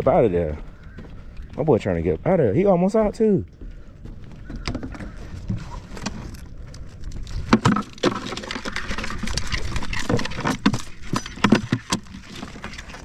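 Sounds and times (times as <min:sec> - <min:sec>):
wind rumbling on microphone: 0:00.0 - 0:13.0
crab net clicks and scrapes: 0:04.4 - 0:13.0.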